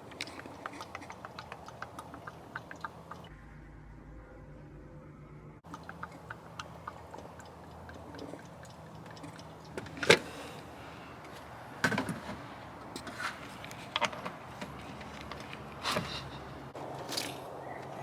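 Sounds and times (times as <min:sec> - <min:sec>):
low hum: 0:00.0 - 0:11.8.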